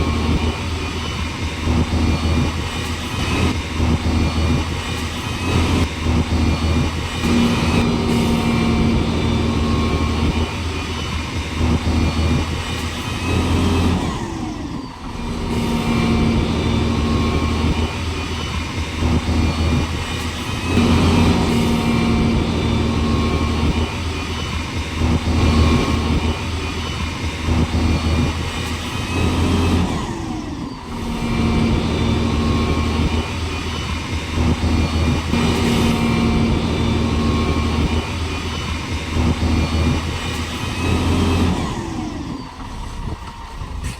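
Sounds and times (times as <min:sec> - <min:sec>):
vehicle engine revving: 0:07.2 - 0:10.7, 0:15.1 - 0:18.2, 0:20.7 - 0:26.8, 0:30.9 - 0:40.2.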